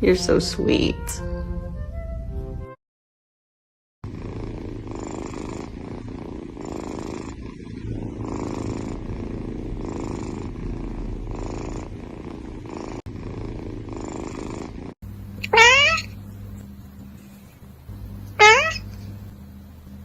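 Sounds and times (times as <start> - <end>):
cat purring: 4.0 - 20.0.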